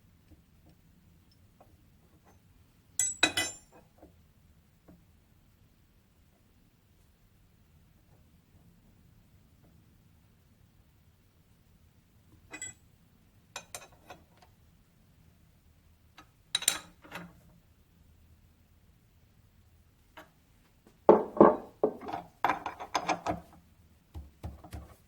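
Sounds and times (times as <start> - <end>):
metal tools clinking on workbench: 3.0 - 3.7.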